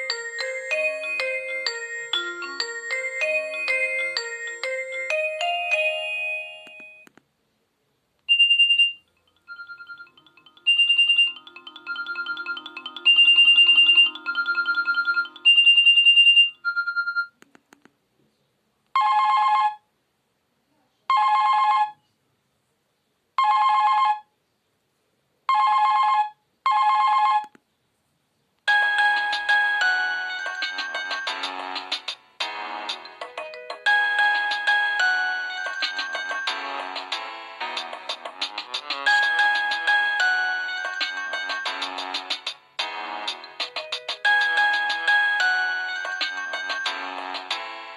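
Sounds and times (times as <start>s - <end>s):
chord-like phone ring tone: 0.0s - 7.0s, 8.3s - 17.3s, 28.7s - 47.9s
phone ringtone beeping melody: 0.0s - 7.1s, 8.3s - 17.4s, 28.7s - 47.9s.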